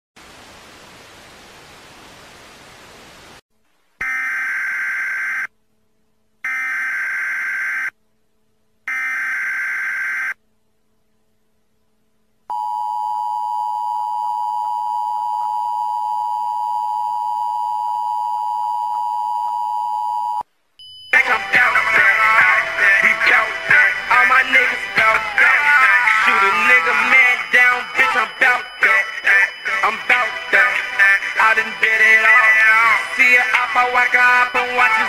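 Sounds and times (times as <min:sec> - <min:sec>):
static hiss: 0:00.2 - 0:04.0
two-tone attention signal: 0:26.6 - 0:30.7.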